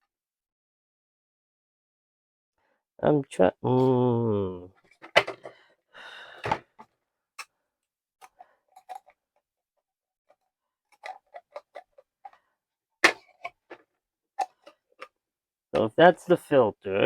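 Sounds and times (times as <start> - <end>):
plastic parts clicking: 5.0 - 5.6, 11.0 - 12.0, 13.0 - 13.8, 14.4 - 15.1.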